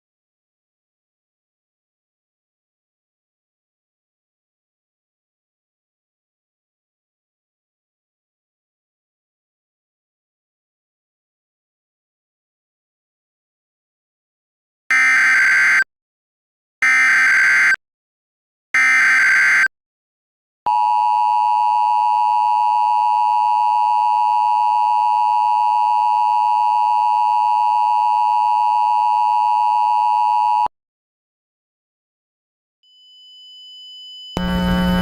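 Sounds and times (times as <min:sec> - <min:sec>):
steady electronic attention tone: 0:34.4 - 0:35.0.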